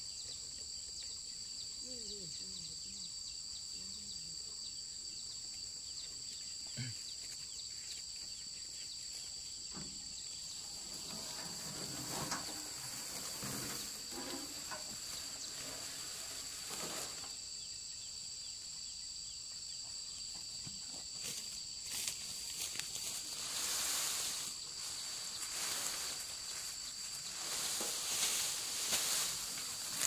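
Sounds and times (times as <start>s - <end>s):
high-pitched insect chorus: 0.0s - 30.0s
handling rustles and knocks: 9.7s - 17.4s, 22.0s - 30.0s.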